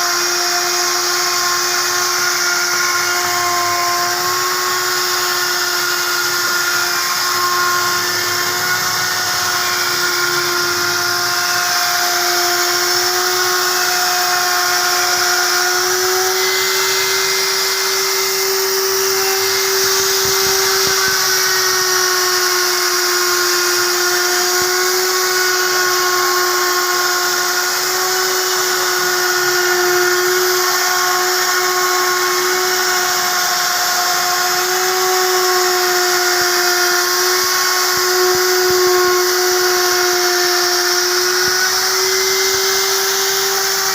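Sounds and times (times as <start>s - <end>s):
wood router whining: 0.0s - 43.9s.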